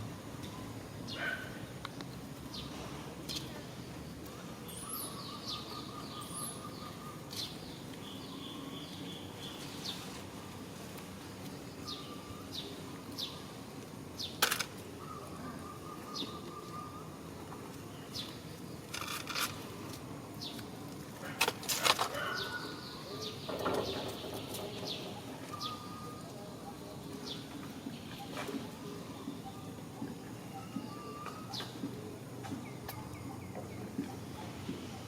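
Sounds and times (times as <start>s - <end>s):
bird chirping: 4.2s - 10.0s, 22.1s - 34.4s.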